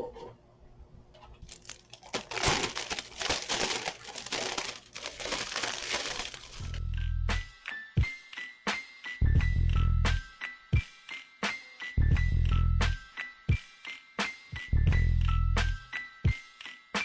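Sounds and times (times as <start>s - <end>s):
plastic packaging crinkling: 1.2s - 6.8s.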